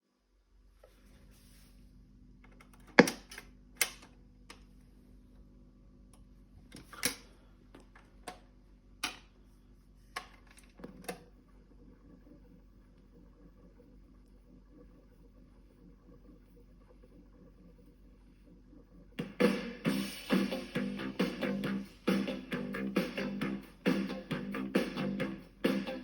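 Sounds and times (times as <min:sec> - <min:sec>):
low steady hum: 0:00.1 - 0:26.0
record player clicks and knocks: 0:02.5 - 0:04.1.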